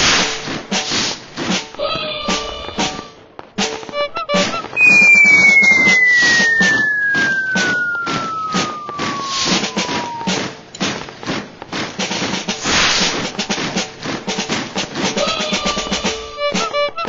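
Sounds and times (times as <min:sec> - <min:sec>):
rhythmic beat: 0:01.5 - 0:17.0
whistle-like tone gliding down: 0:04.8 - 0:10.5.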